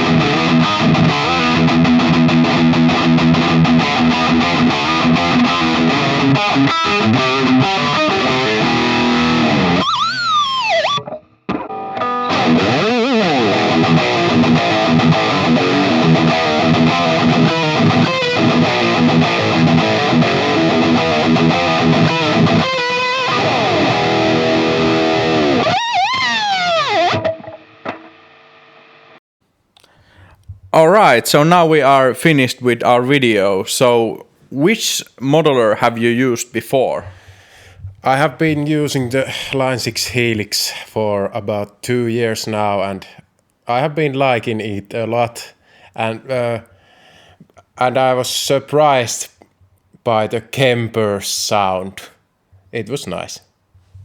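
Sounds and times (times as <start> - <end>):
distorted electric guitar riffing: 0.0 - 29.0.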